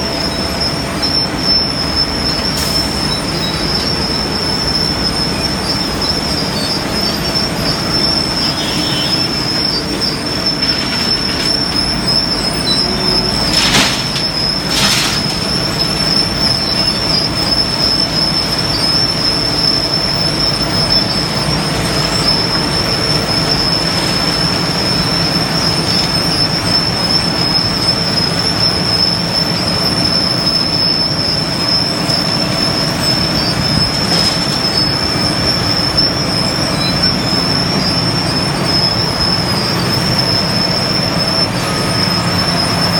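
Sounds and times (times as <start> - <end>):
construction machinery running: 0.0 - 42.9
high-pitched squeal: 0.0 - 42.9.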